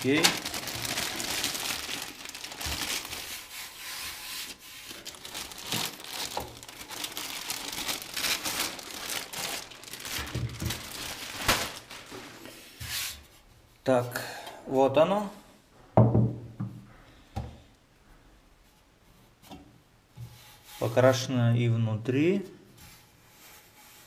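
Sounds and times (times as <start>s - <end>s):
packaging crinkling and rustling: 0.0s - 3.5s, 4.4s - 12.5s.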